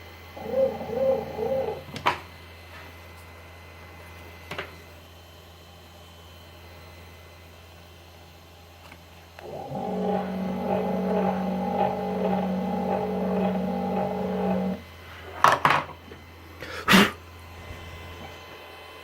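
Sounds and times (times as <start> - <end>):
router motor whining: 9.4 - 14.9.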